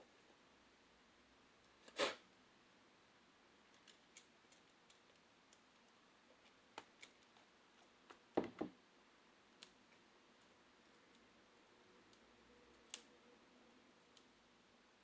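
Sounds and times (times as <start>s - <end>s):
small clicks and taps of tools: 3.7s - 8.2s, 14.1s - 14.3s.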